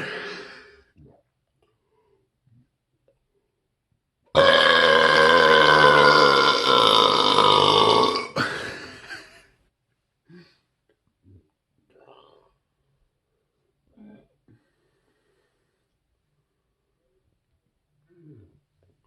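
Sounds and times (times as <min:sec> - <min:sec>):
man burping: 0:04.4 - 0:09.3.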